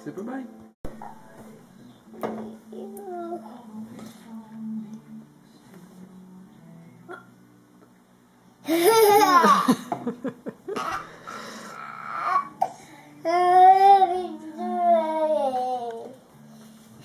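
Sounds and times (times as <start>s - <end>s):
breathing: 11.1s - 11.8s, 12.8s - 13.2s.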